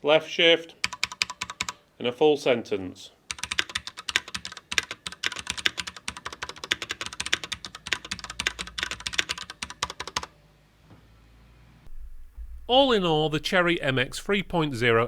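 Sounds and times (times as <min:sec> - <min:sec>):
mechanical keyboard typing: 0:00.8 - 0:01.8, 0:03.3 - 0:10.3.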